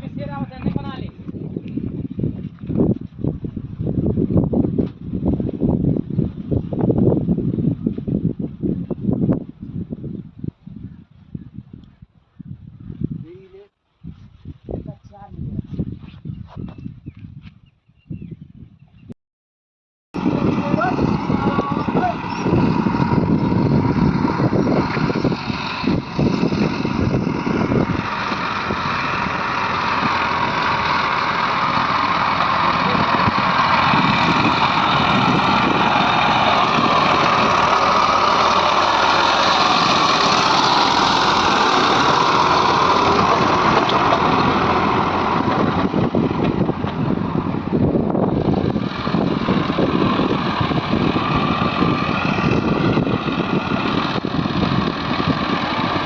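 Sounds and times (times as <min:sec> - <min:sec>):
diesel engine running: 0:20.2 - 0:56.0.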